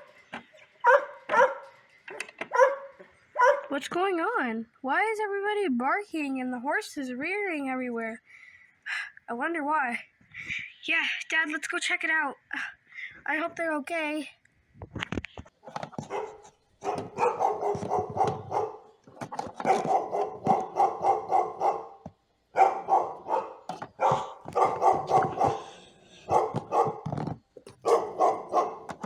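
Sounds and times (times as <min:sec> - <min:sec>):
dogs barking rapidly: 0:00.8 - 0:03.7, 0:15.6 - 0:29.0.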